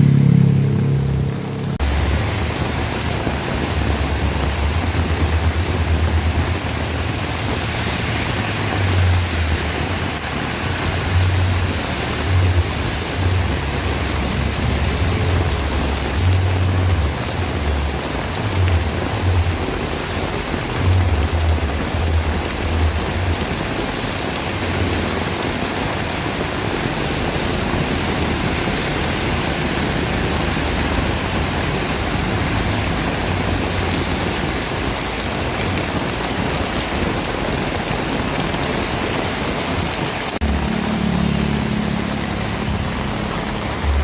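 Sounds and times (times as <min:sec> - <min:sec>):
heavy rain pouring: 0:00.0 - 0:44.0
low motor hum: 0:40.4 - 0:44.0.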